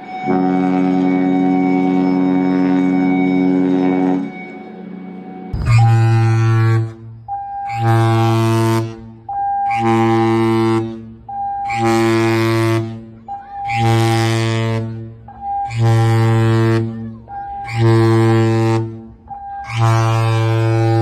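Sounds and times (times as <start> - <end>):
electronic alarm tone: 0.0 - 10.0
deep ship's horn blasts: 0.0 - 21.0
steady droning tone: 0.0 - 21.0.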